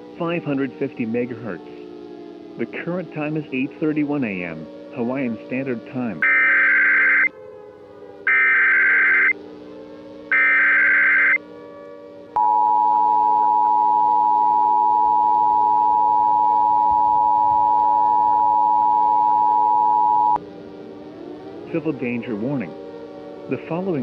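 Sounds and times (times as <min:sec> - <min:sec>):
low droning ambient music: 0:00.0 - 0:24.0
two-tone attention signal: 0:06.2 - 0:07.3, 0:08.3 - 0:09.3, 0:10.3 - 0:11.4, 0:12.4 - 0:20.4
warbling digital data burst: 0:10.3 - 0:11.4.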